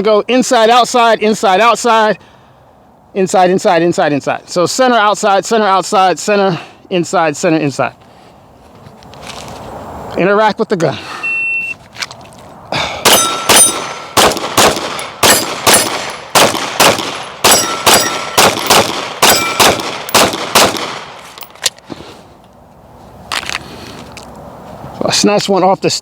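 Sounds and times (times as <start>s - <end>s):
pistol shots: 13.0s - 21.4s
bullets ringing on steel plate: 13.1s - 14.2s, 14.9s - 16.3s, 17.1s - 20.2s.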